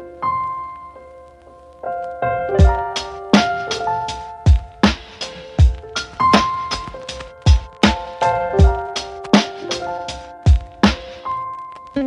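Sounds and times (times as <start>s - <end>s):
upbeat music with drum beat: 2.6s - 11.4s.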